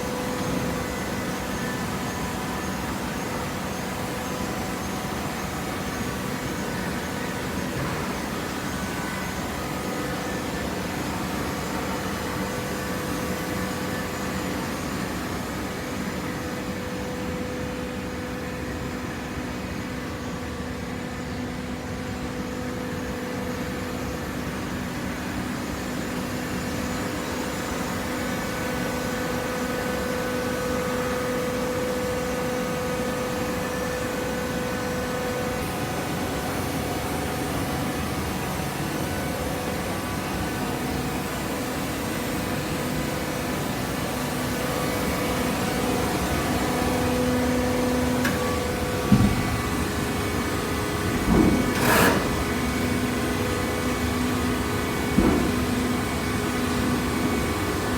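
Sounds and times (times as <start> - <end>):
baler machine humming: 27.8 - 57.9.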